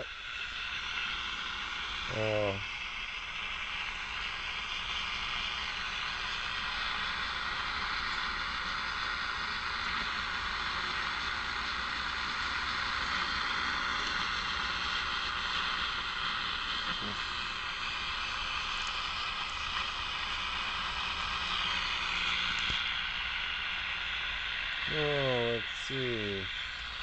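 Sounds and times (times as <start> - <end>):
radio static hiss: 1.9 - 2.7, 14.9 - 27.0.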